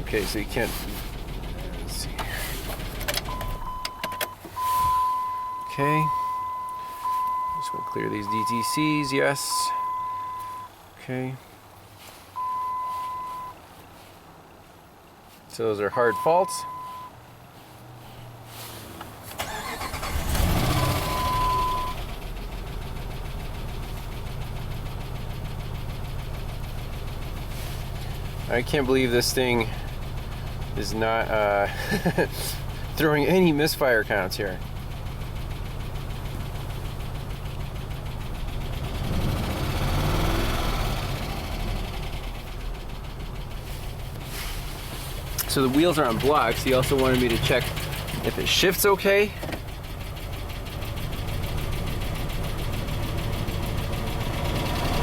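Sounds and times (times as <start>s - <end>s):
engine cranking and starting: 0.0s - 4.7s, 19.0s - 55.0s
engine idling: 0.0s - 11.3s, 19.1s - 55.0s
steady electronic beep: 3.3s - 10.7s.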